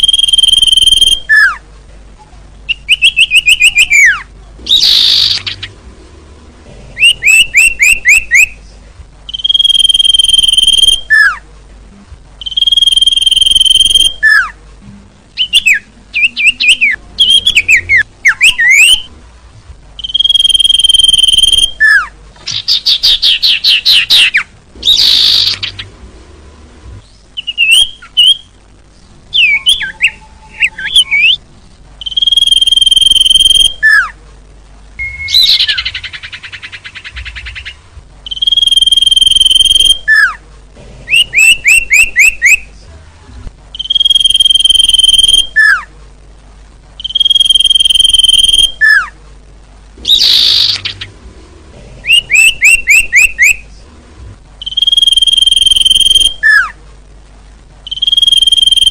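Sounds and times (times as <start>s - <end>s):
songbird calls and trills: 0.0s - 1.6s, 2.2s - 5.8s, 9.3s - 11.4s, 12.4s - 14.6s, 20.0s - 25.9s, 32.0s - 34.2s, 35.0s - 40.4s, 43.7s - 45.9s, 47.0s - 49.1s, 54.6s - 56.8s, 57.8s - 58.9s.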